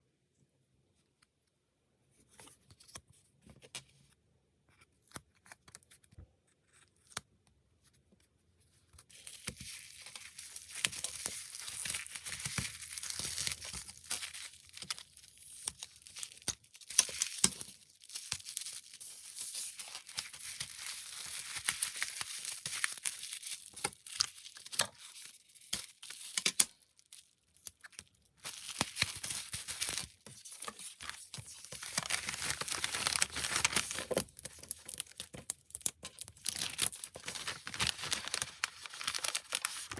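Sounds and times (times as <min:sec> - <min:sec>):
packing material crinkling and tearing: 0:09.1 - 0:39.9.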